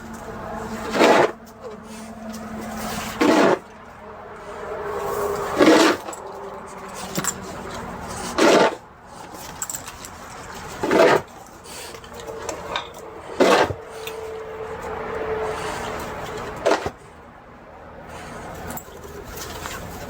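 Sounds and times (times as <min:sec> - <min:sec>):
snow shovel scraping snow: 0:00.6 - 0:03.7, 0:04.9 - 0:06.1, 0:07.0 - 0:09.3, 0:10.8 - 0:14.3, 0:15.4 - 0:17.0.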